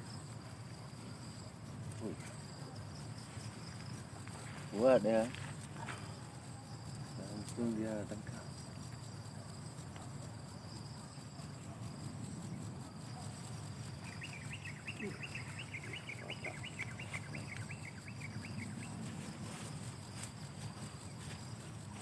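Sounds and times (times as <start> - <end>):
insects trilling: 0.0 - 22.0
small bird chattering: 14.1 - 18.8.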